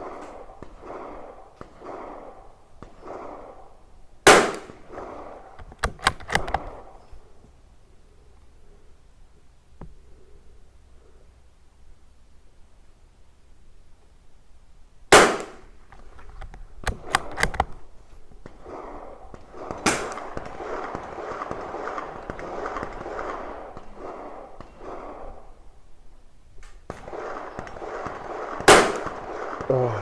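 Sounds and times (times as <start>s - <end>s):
rifle shot crack: 0.0s - 7.1s, 15.1s - 25.8s, 26.6s - 30.0s
rifle bolt metallic clicks: 5.6s - 6.8s, 15.4s - 17.8s.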